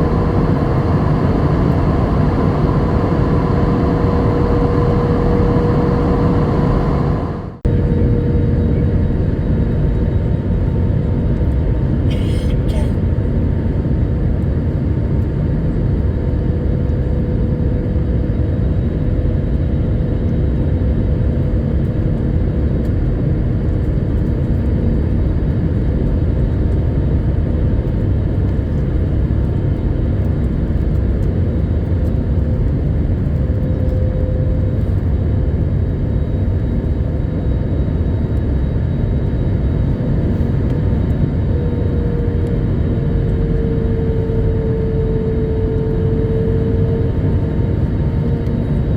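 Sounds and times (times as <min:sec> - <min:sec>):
steady engine tone: 0:00.0 - 0:10.2, 0:32.8 - 0:48.9
airplane cabin engine rumble: 0:00.0 - 0:48.9.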